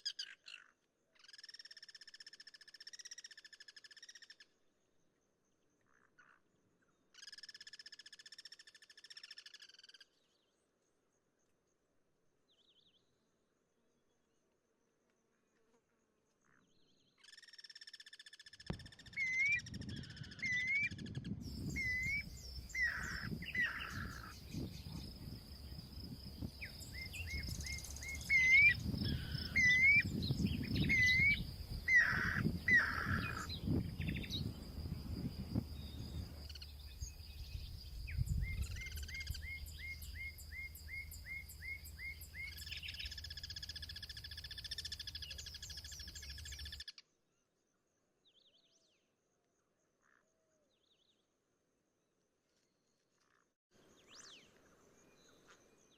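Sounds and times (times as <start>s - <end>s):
cuckoos whistling alert calls: 18.7s - 34.6s, 35.6s - 46.8s.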